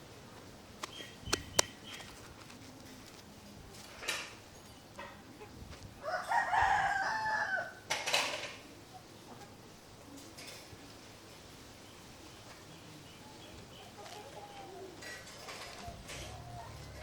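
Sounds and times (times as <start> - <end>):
sharp clicks: 0.8 - 2.0
rooster crowing: 6.0 - 7.8.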